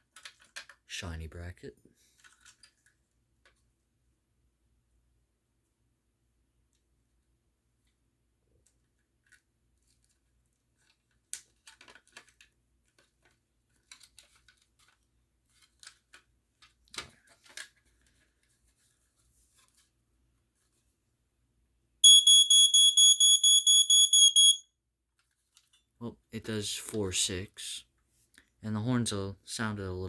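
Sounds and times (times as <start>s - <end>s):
smoke alarm beeping: 22.0s - 24.7s.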